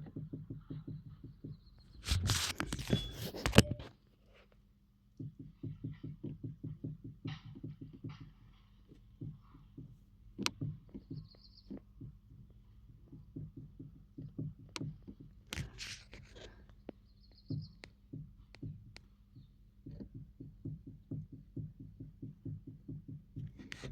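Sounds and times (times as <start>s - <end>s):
rustling noise: 1.9s - 4.5s, 15.5s - 16.6s.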